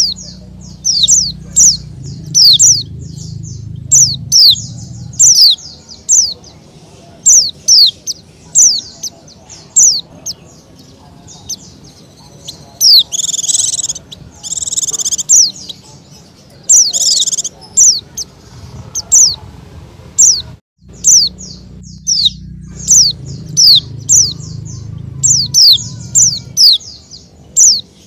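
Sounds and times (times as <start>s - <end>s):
bird chirping: 0.0s - 19.4s, 20.2s - 28.0s
buzzy bird trills: 0.0s - 19.4s, 20.2s - 28.0s.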